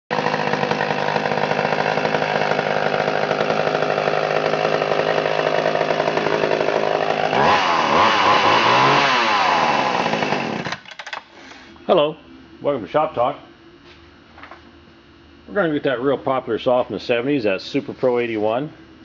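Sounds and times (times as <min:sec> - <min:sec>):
chainsaw engine revving: 0:00.1 - 0:10.9.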